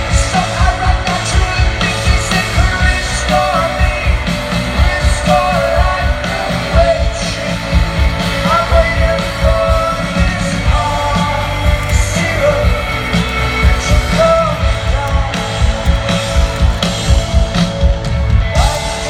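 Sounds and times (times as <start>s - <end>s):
rock song with sung vocal: 0.0s - 19.0s
fast drum beat: 9.0s - 19.0s.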